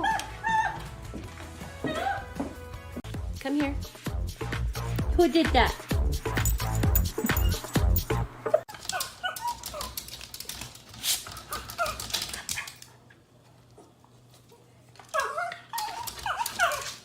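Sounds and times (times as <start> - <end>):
dog whining and whimpering: 7.2 - 7.8, 15.1 - 17.0.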